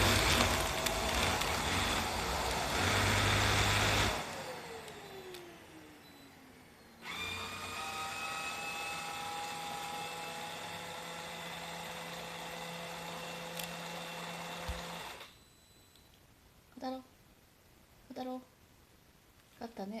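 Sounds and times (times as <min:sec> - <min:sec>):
vacuum cleaner motor whining: 0:00.0 - 0:15.4.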